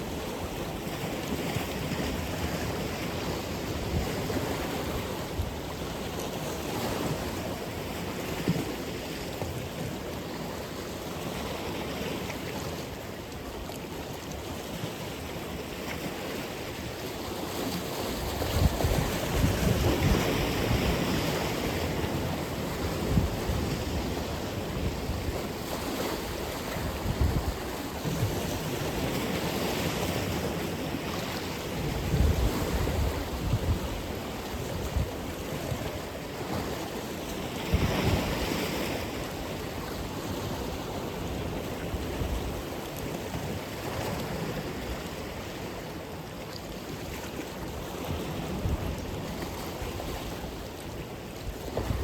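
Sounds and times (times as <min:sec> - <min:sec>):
waves breaking on shore: 0:00.0 - 0:52.0
wind buffeting microphone: 0:18.1 - 0:29.2, 0:31.7 - 0:35.9, 0:51.4 - 0:52.0.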